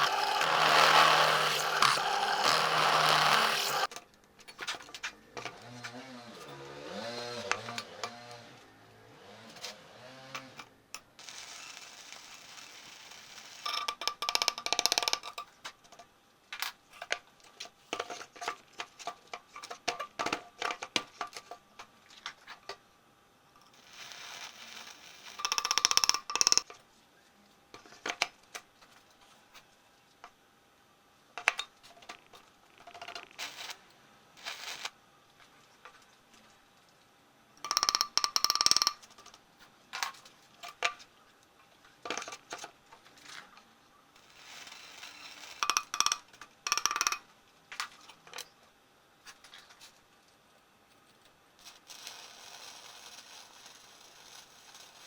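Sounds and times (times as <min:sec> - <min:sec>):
metal scraping: 0:00.0 - 0:03.9.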